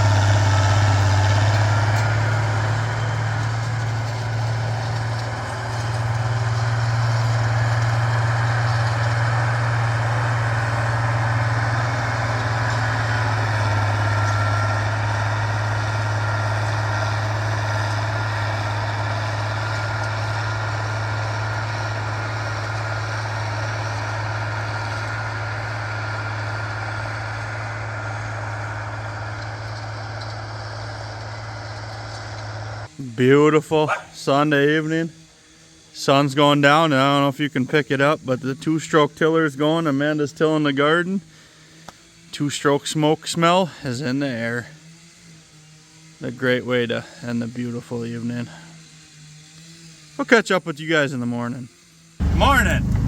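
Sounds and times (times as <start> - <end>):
tractor engine droning: 0.0 - 35.1, 52.2 - 53.0.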